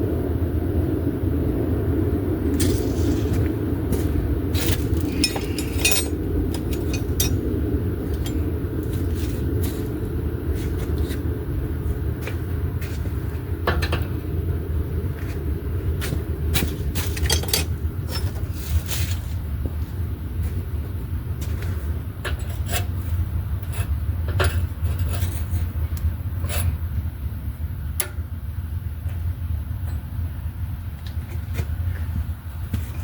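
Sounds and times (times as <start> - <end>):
low rumble: 0.0 - 22.5
metallic tool clicks and clinks: 4.6 - 7.5, 17.0 - 18.4.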